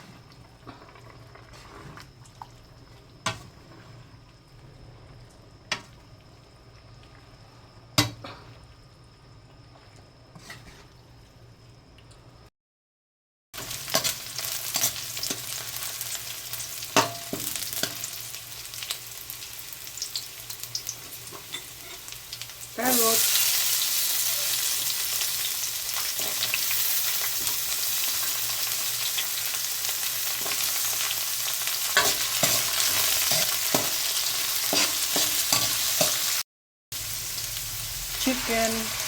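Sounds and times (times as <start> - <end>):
food sizzling in a pan: 13.6 - 39.0.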